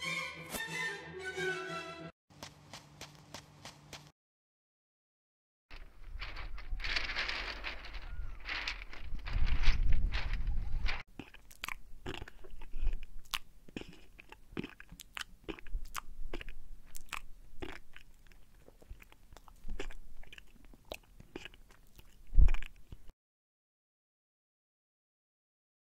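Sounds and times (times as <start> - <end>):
crisp crunching and chewing: 5.8 - 23.1.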